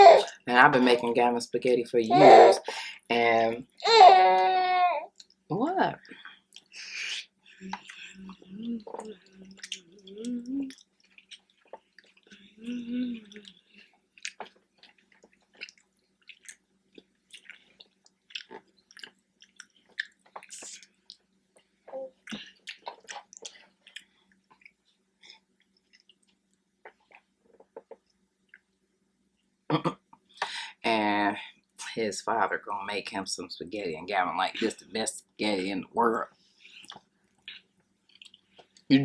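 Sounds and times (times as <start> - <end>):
wet chewing with mouth smacks: 6.3 - 6.8, 7.7 - 9.9, 10.7 - 12.4, 13.2 - 24.8, 36.6 - 38.9
person humming mm: 7.0 - 10.8, 12.4 - 13.5.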